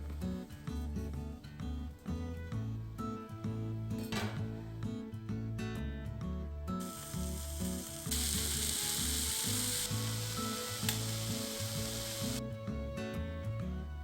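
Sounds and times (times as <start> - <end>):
background music: 0.0 - 14.0
steady hiss: 6.8 - 12.4.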